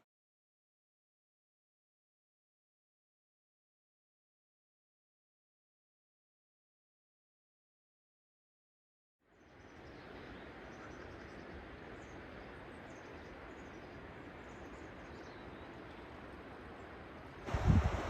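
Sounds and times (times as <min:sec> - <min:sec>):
outdoor background hiss: 0:09.2 - 0:18.0
wind rumble on microphone: 0:17.4 - 0:18.0.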